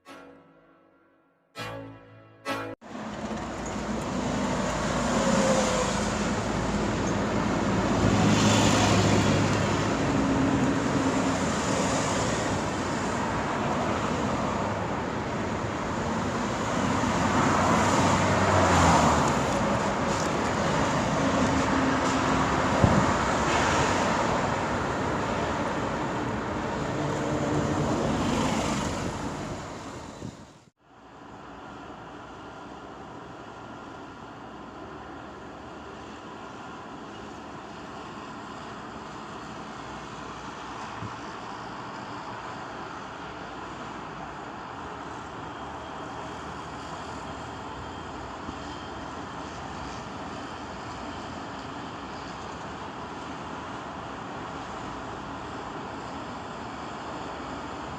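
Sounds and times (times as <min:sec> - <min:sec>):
traffic noise: 0:01.7 - 0:57.9
crane engine running: 0:02.6 - 0:30.3.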